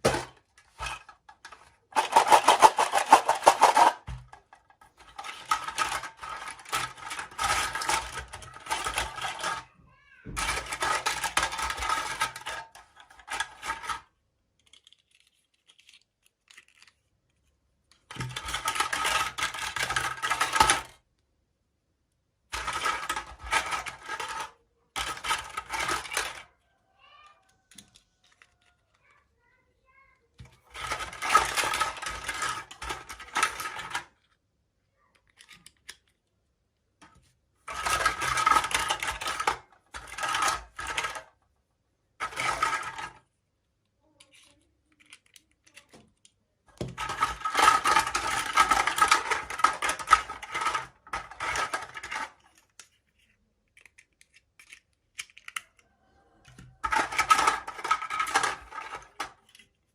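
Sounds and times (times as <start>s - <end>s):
packaging rustling: 2.0s - 4.0s.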